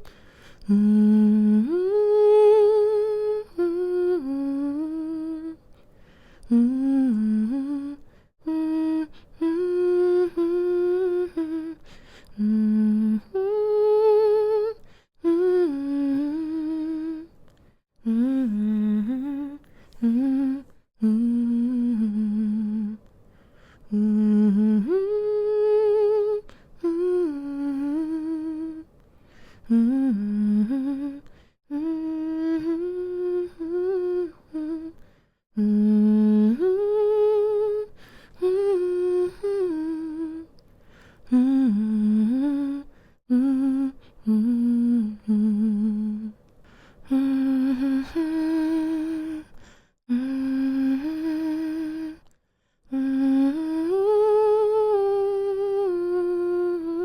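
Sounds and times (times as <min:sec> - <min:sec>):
woman humming a lullaby: 0:00.7 - 0:05.6, 0:06.5 - 0:11.8, 0:29.7 - 0:35.0, 0:52.9 - 0:57.0.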